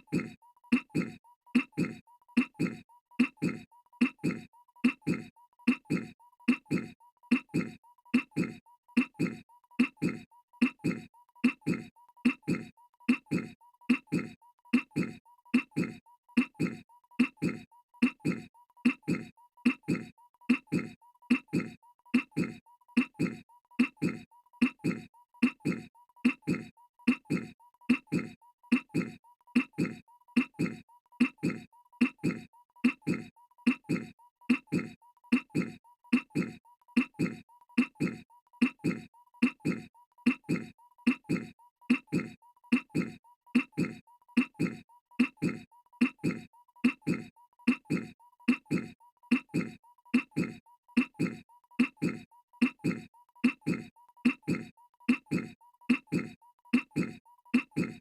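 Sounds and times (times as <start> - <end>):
cartoon voice clearing throat: 0.0 - 58.0.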